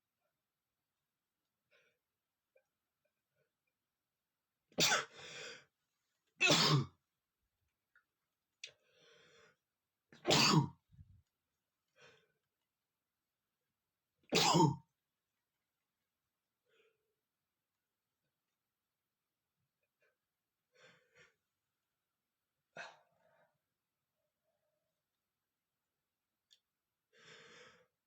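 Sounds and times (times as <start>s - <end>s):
man sneezing: 6.4s - 6.9s.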